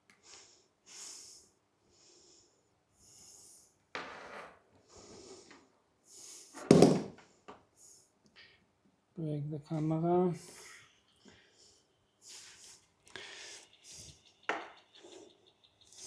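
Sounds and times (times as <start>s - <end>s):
person breathing hard: 0.2s - 3.8s, 10.4s - 14.2s.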